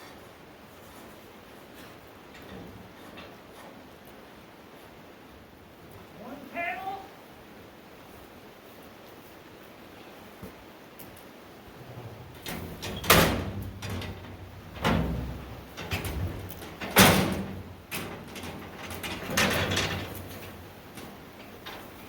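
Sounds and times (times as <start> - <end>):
metal scraping: 12.3 - 22.0
loud metal bangs: 12.4 - 20.8.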